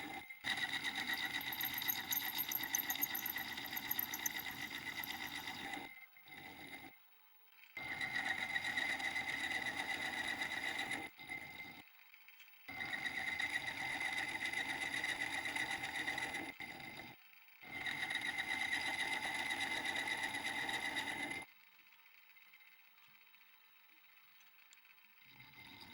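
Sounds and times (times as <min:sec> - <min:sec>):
benchtop machine tool whining: 0:01.0 - 0:05.7.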